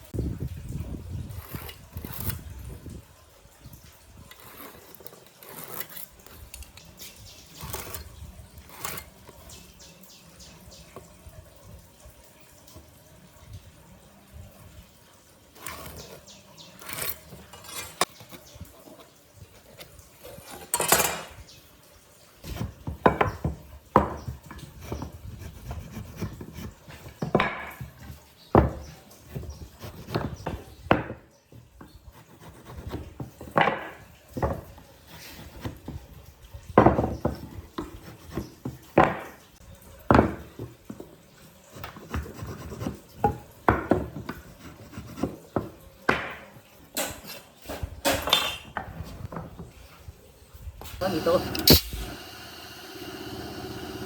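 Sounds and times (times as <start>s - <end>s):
wood rubbing and scraping: 0.8s - 3.0s, 4.1s - 9.7s, 15.5s - 21.4s, 22.4s - 30.9s.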